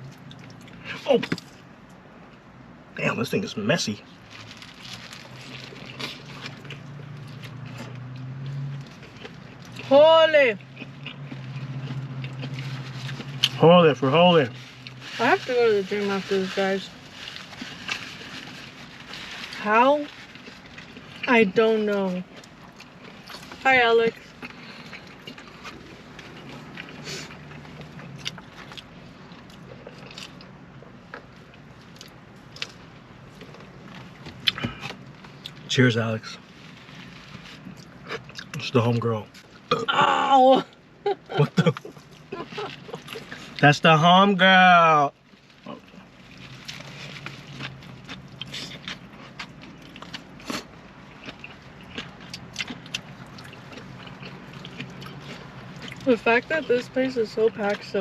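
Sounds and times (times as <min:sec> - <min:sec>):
person chewing food: 0:00.1 - 0:01.5, 0:04.8 - 0:09.9, 0:10.6 - 0:13.6, 0:22.2 - 0:23.6, 0:24.2 - 0:35.6, 0:36.7 - 0:38.6, 0:45.4 - 0:56.1
wrapper paper crinkling: 0:04.2 - 0:06.6.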